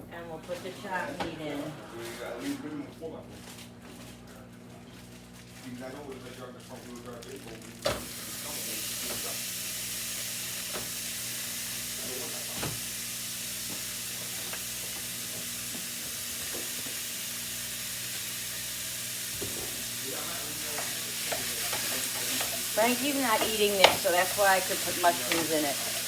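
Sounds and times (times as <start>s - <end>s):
meat sizzling in a pan: 7.8s - 26.0s
utensil clicking against pan: 20.7s - 26.0s.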